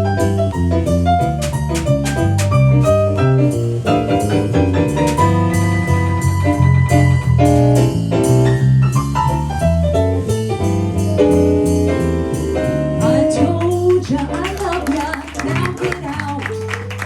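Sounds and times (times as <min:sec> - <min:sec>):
moving bass line: 0:00.0 - 0:14.6
percussion: 0:00.0 - 0:17.0
piano chords: 0:00.0 - 0:17.0.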